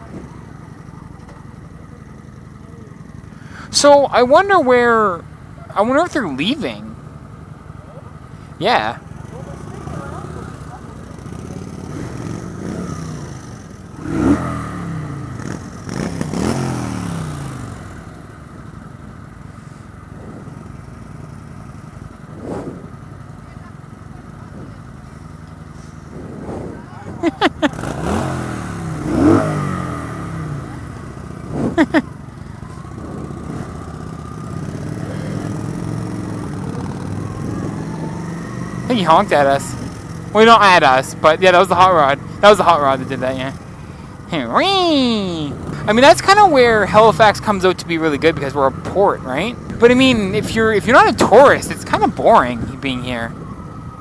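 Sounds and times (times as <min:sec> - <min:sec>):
motorcycle engine revving: 0:08.8 - 0:54.0.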